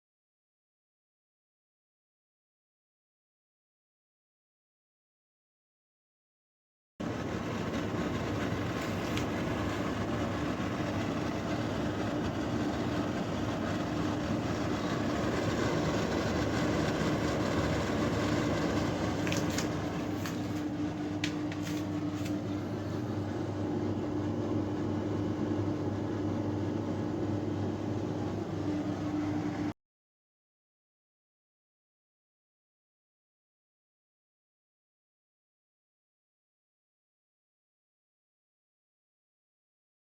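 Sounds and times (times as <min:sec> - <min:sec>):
air conditioner fan whoosh: 0:07.0 - 0:29.8
compressor low hum: 0:07.0 - 0:29.8.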